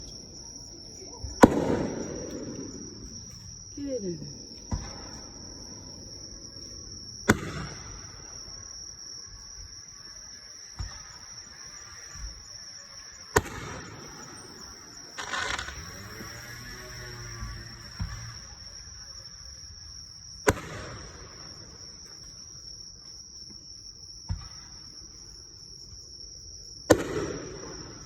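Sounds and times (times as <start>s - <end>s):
fireworks bangs: 1.0s - 3.4s, 4.6s - 5.9s, 7.2s - 8.6s, 13.3s - 16.2s, 20.4s - 22.0s, 26.9s - 28.0s
crackling hiss: 5.8s - 19.8s.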